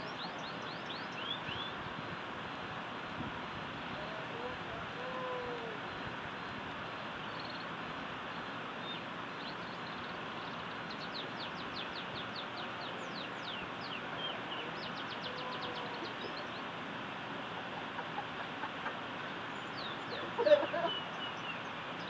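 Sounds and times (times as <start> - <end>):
background hiss: 0.0 - 22.0
canary song trills: 8.9 - 16.8, 17.4 - 22.0.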